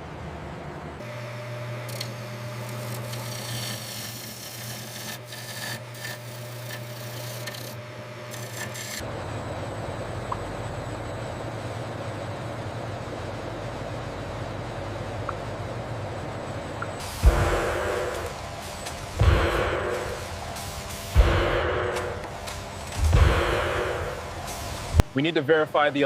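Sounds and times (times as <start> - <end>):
low machinery rumble: 0.0 - 26.0
machinery humming: 0.0 - 26.0
rough scraping noise: 2.9 - 9.0.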